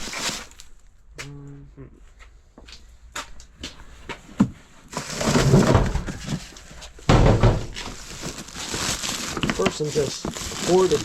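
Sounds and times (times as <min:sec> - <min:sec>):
cardboard boxes rustling and scraping: 0:00.0 - 0:00.7, 0:03.8 - 0:11.0.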